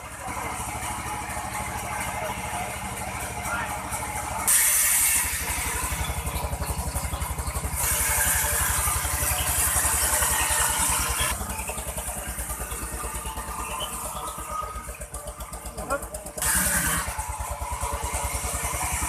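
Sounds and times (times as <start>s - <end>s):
sawmill engine chugging: 0.0s - 19.0s
saw hissing through log: 4.4s - 5.9s, 7.7s - 11.3s, 16.4s - 17.2s.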